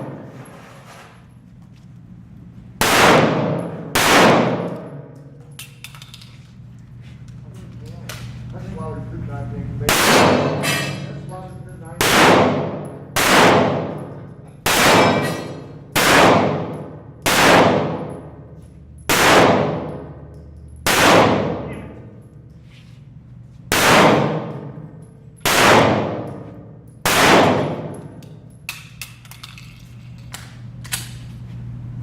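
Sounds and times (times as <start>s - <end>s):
pistol shots ringing on steel: 2.8s - 5.1s, 9.9s - 11.0s, 12.0s - 21.8s, 23.7s - 28.2s.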